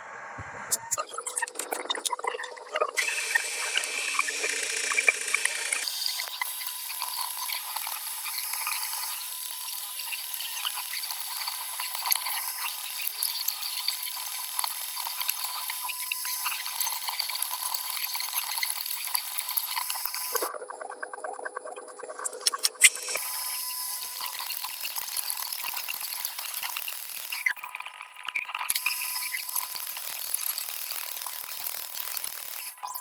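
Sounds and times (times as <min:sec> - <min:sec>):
crackle of small ticks: 0:03.8 - 0:20.5, 0:24.0 - 0:33.0.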